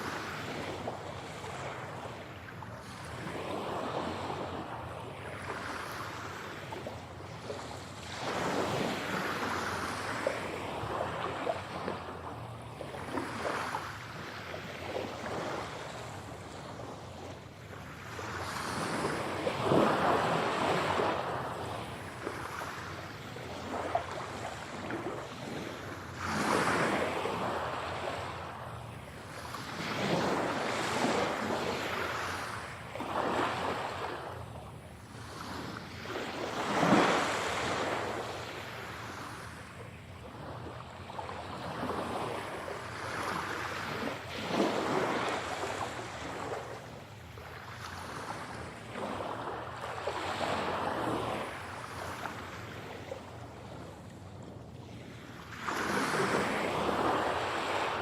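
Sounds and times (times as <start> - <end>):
ocean waves breaking on shore: 0.0 - 58.0.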